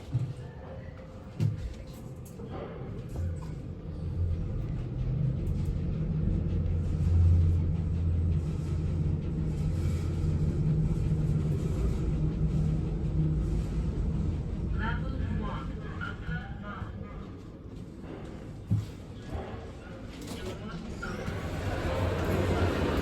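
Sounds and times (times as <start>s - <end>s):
lift car rumbling: 20.9s - 23.0s.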